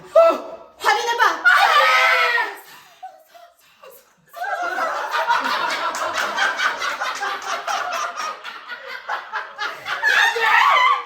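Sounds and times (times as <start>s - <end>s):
crowd laughing: 4.3s - 11.0s.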